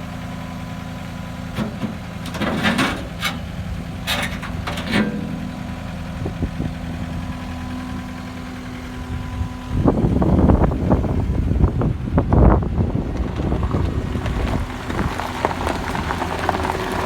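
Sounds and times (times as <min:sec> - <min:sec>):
diesel engine idling: 0:00.0 - 0:17.0
wind noise on microphone: 0:06.1 - 0:08.0, 0:09.0 - 0:17.0.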